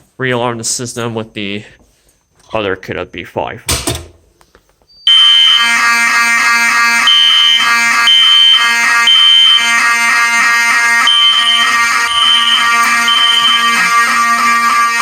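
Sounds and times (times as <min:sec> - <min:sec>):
fire alarm horns sounding: 0:05.0 - 0:15.0
high beep: 0:05.1 - 0:05.7, 0:11.0 - 0:14.0.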